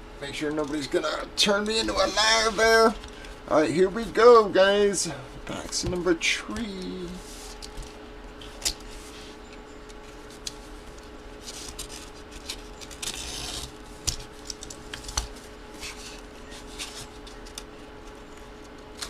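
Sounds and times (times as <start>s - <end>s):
cardboard and packaging rustling: 10.1s - 17.6s
cardboard tearing: 11.5s - 13.8s.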